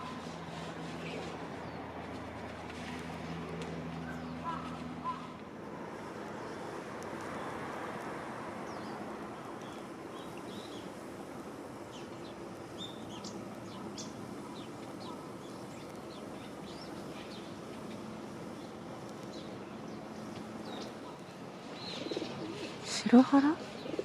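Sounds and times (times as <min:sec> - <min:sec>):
small birds chirping: 0:08.6 - 0:11.0, 0:11.8 - 0:24.0.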